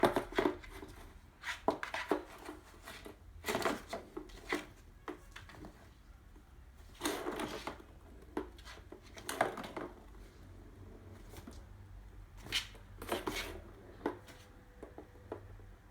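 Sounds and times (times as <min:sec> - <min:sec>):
scraping on cardboard: 0:00.0 - 0:04.8, 0:12.4 - 0:14.6.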